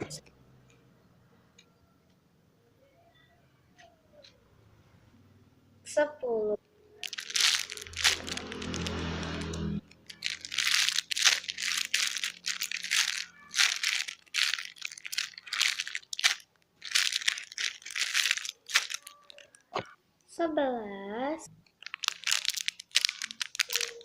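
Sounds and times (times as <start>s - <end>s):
squishy toy rustling: 7.0s - 19.6s, 21.8s - 24.0s.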